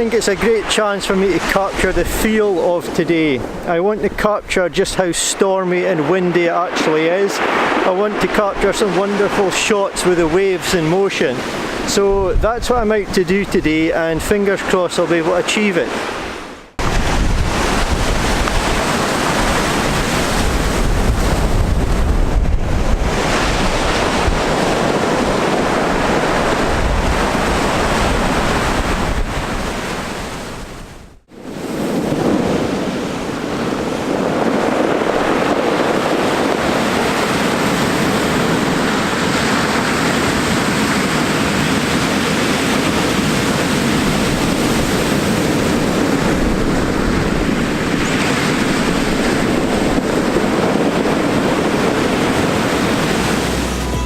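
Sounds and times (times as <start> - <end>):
sea surf breaking on shore: 0.0 - 54.0
wind buffeting microphone: 11.4 - 14.4, 16.1 - 54.0.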